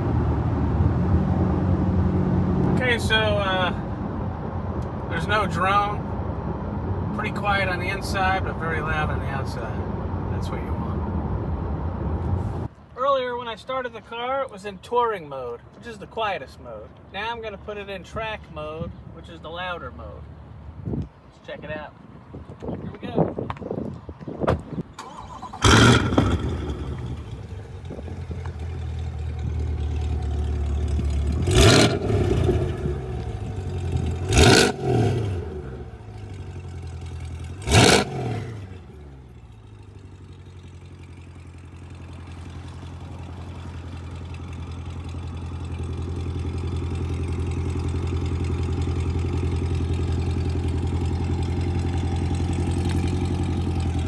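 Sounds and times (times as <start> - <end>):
car engine burst: 25.0 - 36.6, 37.2 - 39.4.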